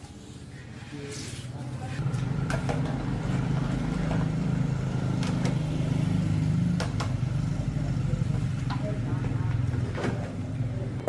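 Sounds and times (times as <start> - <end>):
machine hum: 2.0 - 11.0.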